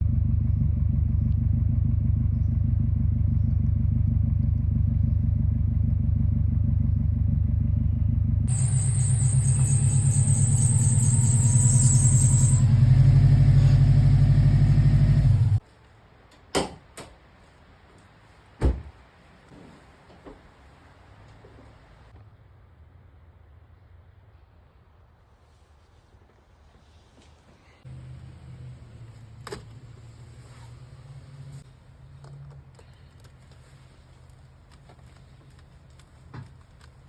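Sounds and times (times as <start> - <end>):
car engine running: 0.0 - 15.6
high steady whine: 8.5 - 12.6.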